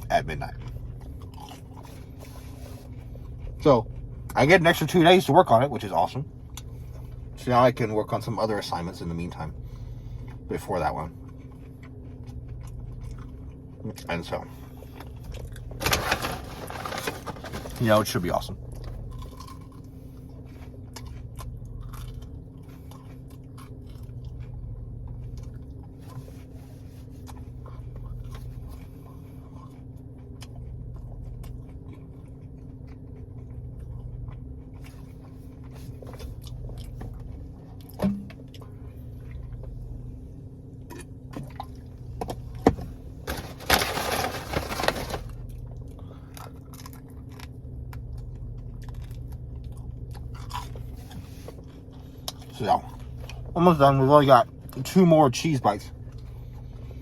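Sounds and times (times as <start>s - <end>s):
person chewing and crunching: 0.0s - 4.6s, 9.1s - 17.9s, 18.6s - 53.8s
air conditioner hum: 0.0s - 57.0s
loud rustling: 15.7s - 17.9s, 43.2s - 45.4s
small eating clicks: 27.2s - 35.7s, 45.8s - 50.9s.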